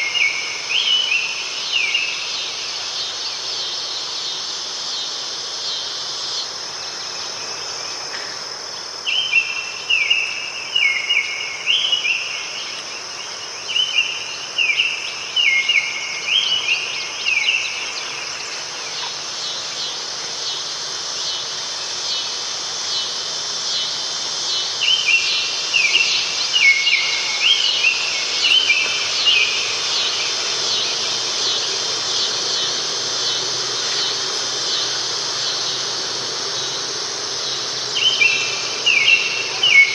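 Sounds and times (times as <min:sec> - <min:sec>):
high insect chorus: 0:00.0 - 0:39.9
songbird chirping: 0:23.0 - 0:39.9.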